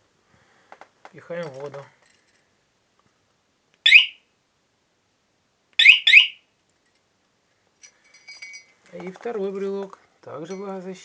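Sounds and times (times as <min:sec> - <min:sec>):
scooter alarm chirping: 0:03.9 - 0:04.2, 0:05.8 - 0:06.4.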